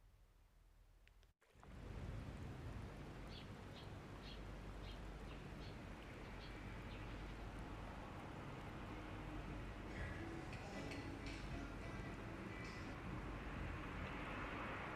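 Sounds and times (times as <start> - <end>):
outdoor background hiss: 0.0 - 14.9
bird chirping: 3.2 - 7.3.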